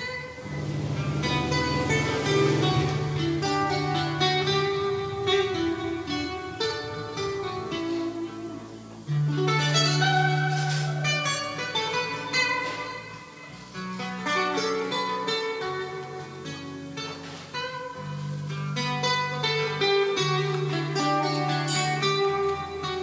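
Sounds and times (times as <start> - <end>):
held bass line: 0.0 - 10.7
plucked guitar music: 0.0 - 23.0.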